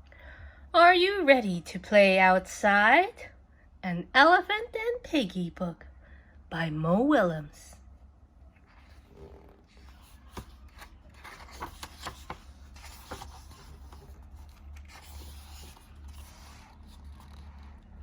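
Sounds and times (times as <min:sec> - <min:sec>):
faint low hum: 0:00.0 - 0:18.0
paper pages rustling: 0:08.6 - 0:18.0.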